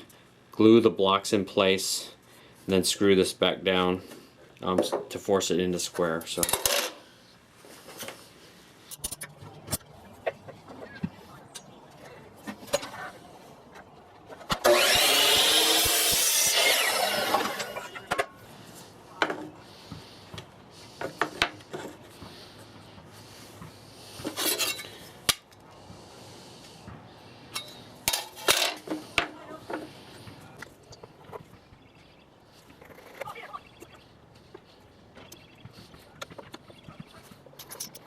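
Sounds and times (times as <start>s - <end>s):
saw cutting wood: 14.5s - 18.2s.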